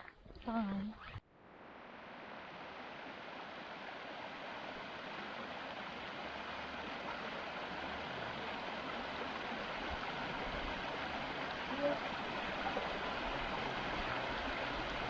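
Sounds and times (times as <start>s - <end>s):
waterfall roaring: 5.3s - 15.0s.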